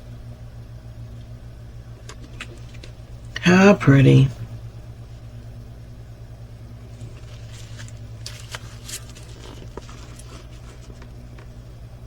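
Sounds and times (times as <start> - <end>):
low electrical hum: 0.0 - 12.0
plastic crinkling and clicking: 2.0 - 3.0, 7.0 - 11.6.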